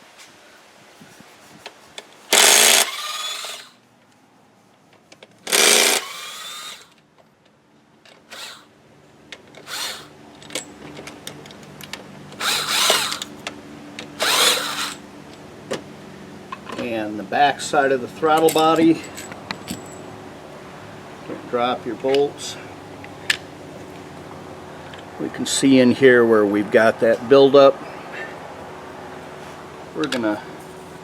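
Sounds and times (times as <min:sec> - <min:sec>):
cordless driver motor whine: 0:02.3 - 0:03.8, 0:05.5 - 0:07.0, 0:08.3 - 0:08.7, 0:09.6 - 0:10.2, 0:12.4 - 0:13.3, 0:14.2 - 0:15.0.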